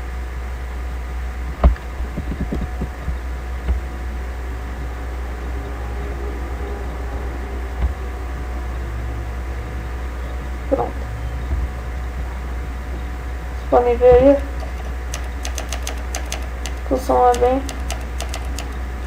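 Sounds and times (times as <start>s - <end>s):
low electrical hum: 0.0s - 19.0s
short clicks: 14.5s - 19.0s.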